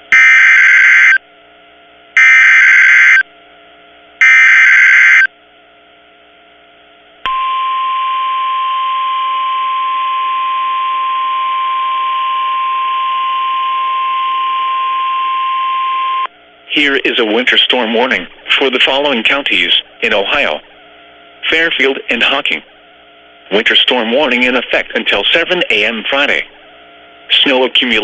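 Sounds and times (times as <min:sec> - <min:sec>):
steady warning alarm tone: 0:00.0 - 0:01.2, 0:02.2 - 0:03.3, 0:04.2 - 0:05.3.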